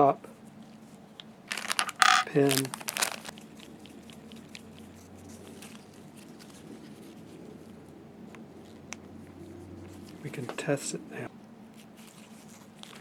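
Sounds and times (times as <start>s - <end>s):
small metal parts clicking: 1.6s - 3.3s.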